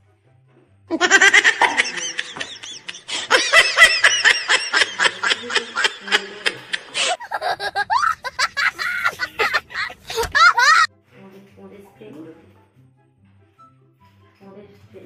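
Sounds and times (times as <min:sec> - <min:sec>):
rapid high-pitched laughter: 0:00.9 - 0:10.9.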